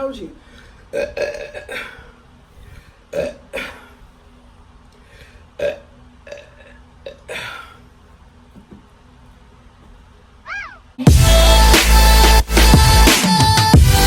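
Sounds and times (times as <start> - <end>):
woman burping: 0.9 - 2.0, 3.1 - 3.9, 5.6 - 7.7.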